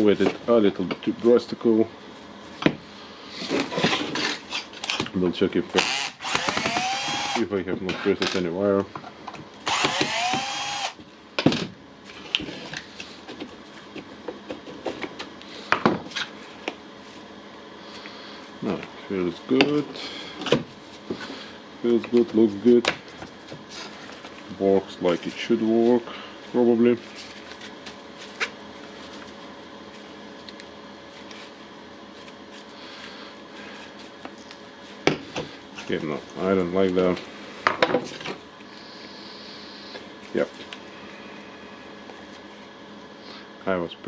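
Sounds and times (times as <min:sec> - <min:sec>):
low background hum: 0:00.0 - 0:44.0
impact wrench motor spinning: 0:05.8 - 0:07.5, 0:09.6 - 0:11.0.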